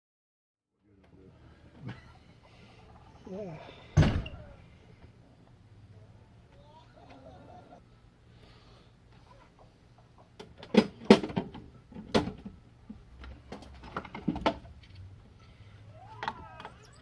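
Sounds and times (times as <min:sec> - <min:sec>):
faint low hum: 0:00.8 - 0:10.7.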